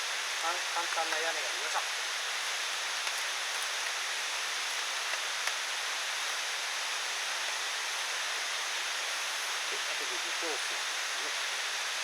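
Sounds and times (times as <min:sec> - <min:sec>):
rain hissing: 0:00.0 - 0:12.0.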